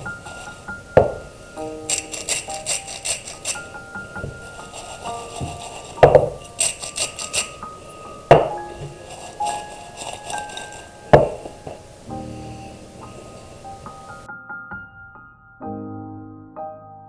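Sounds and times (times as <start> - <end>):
tableware clinking: 0.0 - 14.3
soft background music: 0.0 - 17.0.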